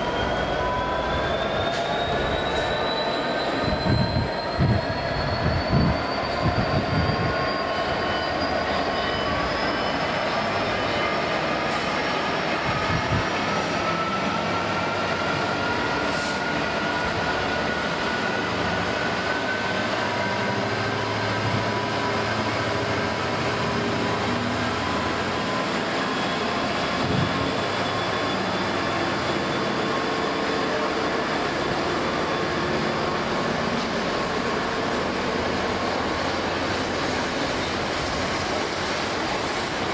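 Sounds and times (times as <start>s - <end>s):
train wheels rumbling on rail: 0.0s - 39.9s.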